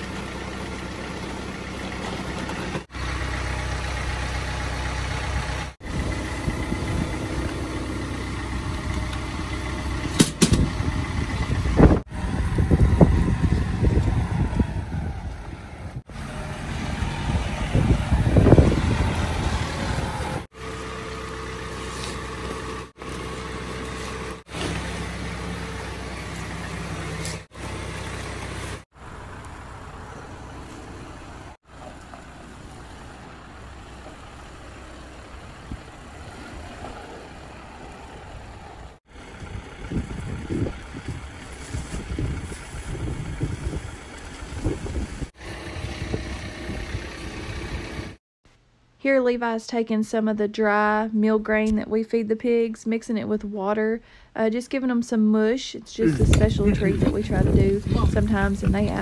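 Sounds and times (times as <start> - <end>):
wind buffeting microphone: 5.8 - 7.5, 10.4 - 16.1, 16.8 - 20.5, 38.3 - 48.2, 56.0 - 59.0.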